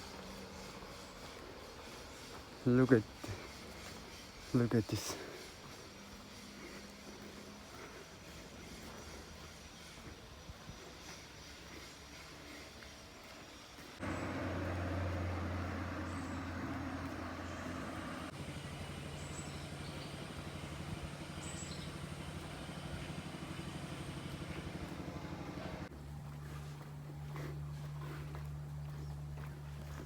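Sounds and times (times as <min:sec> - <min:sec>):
vehicle engine running: 0:00.0 - 0:11.8, 0:13.3 - 0:30.0.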